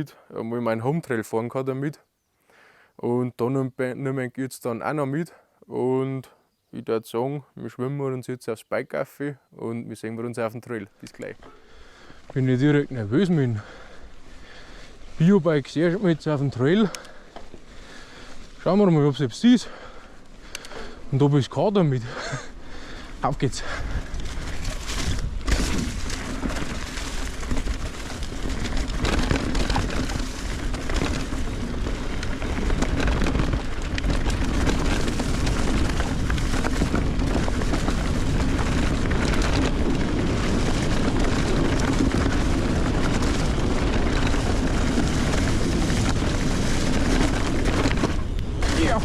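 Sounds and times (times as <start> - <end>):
bike tyre and trail noise: 10.0 - 49.0
wind buffeting microphone: 22.7 - 49.0.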